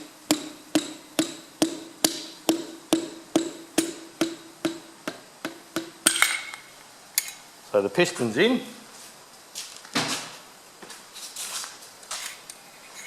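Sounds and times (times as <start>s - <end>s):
metallic tapping of piston: 0.3s - 6.6s.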